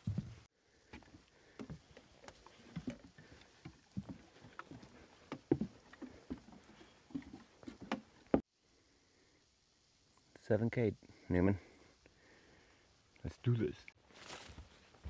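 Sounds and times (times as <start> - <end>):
footsteps on a trail: 0.0 - 8.4, 14.0 - 15.0.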